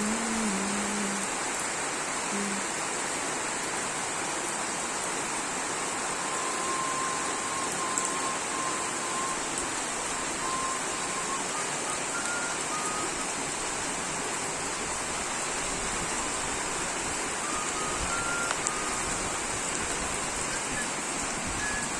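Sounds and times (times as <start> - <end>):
steady rain falling: 0.0 - 21.9
faint short whistled notes: 6.2 - 9.4, 10.2 - 13.2, 17.4 - 19.2, 21.6 - 21.9.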